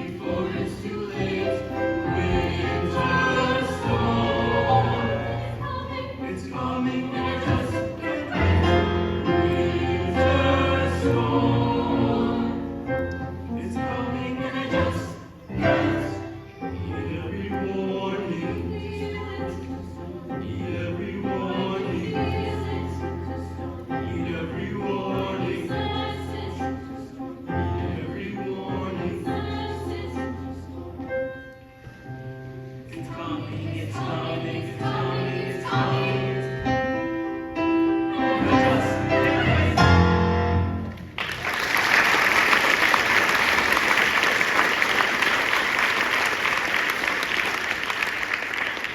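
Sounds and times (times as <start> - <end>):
choir singing with accompaniment: 0.0 - 41.2
audience applause: 40.9 - 48.9.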